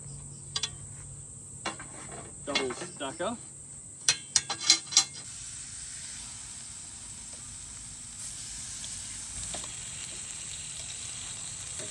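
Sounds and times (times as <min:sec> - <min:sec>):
steak sizzling on a metal plate: 0:05.2 - 0:11.9.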